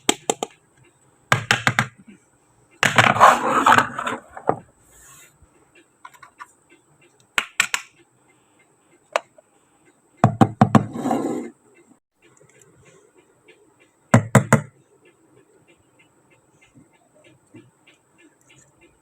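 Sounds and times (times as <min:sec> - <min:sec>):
toy pieces clicking and tapping: 0:00.0 - 0:00.6, 0:01.3 - 0:02.0, 0:07.2 - 0:08.0.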